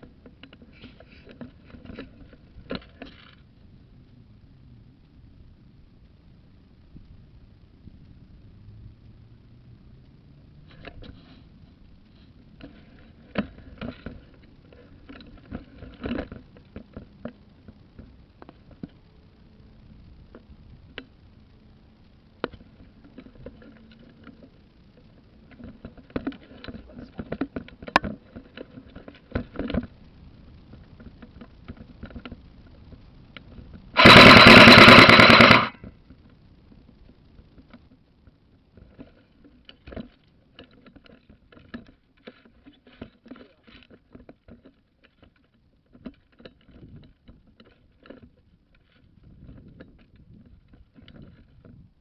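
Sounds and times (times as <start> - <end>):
sharp clicks and knocks: 33.4 - 35.9
airsoft gun full-auto fire: 34.0 - 35.8.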